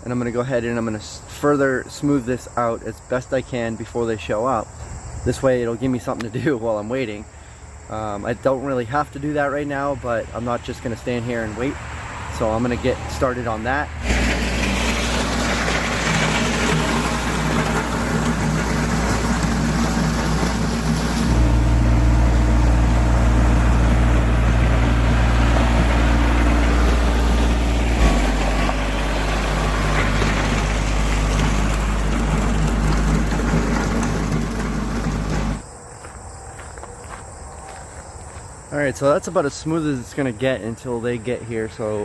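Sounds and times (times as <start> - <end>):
tractor diesel engine running: 9.3 - 35.6.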